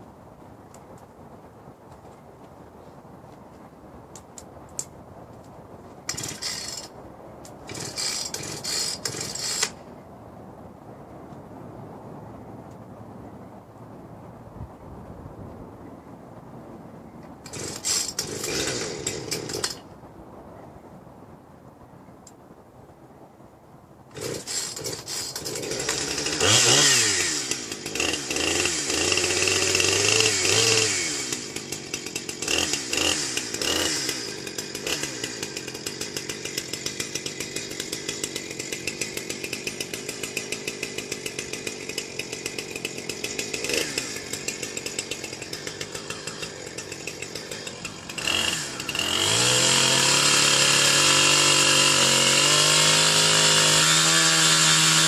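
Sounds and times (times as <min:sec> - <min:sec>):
chainsaw revving and idling: 0:06.0 - 0:06.9, 0:07.6 - 0:09.8, 0:17.5 - 0:19.8, 0:24.1 - 0:55.0.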